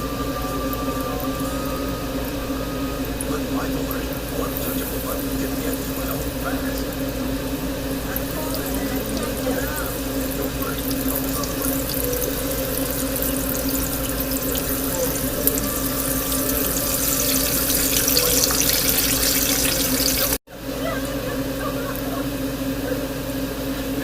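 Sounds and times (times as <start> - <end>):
low hum: 0.0 - 24.0
zucchini sizzling in frying oil: 4.5 - 7.2, 8.1 - 20.4.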